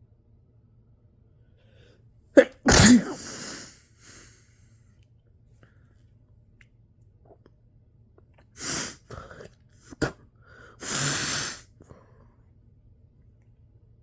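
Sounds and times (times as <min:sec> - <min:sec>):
person sneezing: 0:02.4 - 0:04.3, 0:08.6 - 0:10.2, 0:10.8 - 0:11.7.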